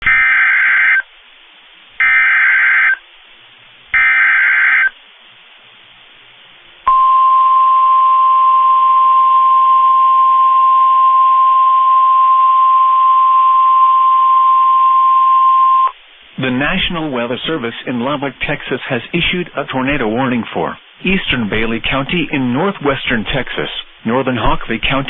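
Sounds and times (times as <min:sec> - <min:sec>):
screechy digital data bursts: 0:02.0 - 0:03.0, 0:04.0 - 0:05.0
steady warning alarm tone: 0:02.0 - 0:03.0, 0:04.0 - 0:04.9, 0:06.9 - 0:15.9
faint hiss: 0:15.9 - 0:25.0.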